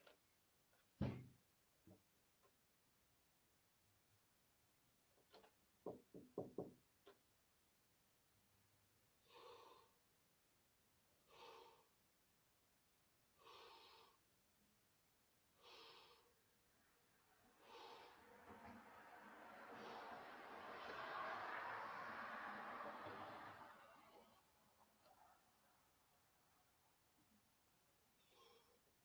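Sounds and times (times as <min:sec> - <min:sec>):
faint breathing: 0:09.2 - 0:10.0, 0:11.2 - 0:12.0, 0:13.4 - 0:14.2, 0:15.5 - 0:16.4, 0:17.4 - 0:20.9, 0:28.2 - 0:29.0.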